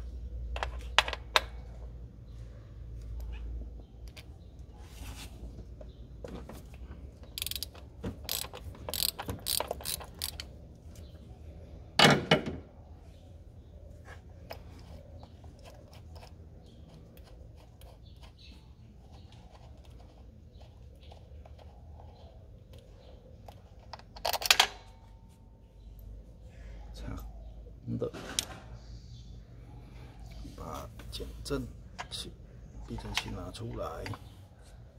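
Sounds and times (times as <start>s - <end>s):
socket ratchet clicking: 7.2s - 10.5s.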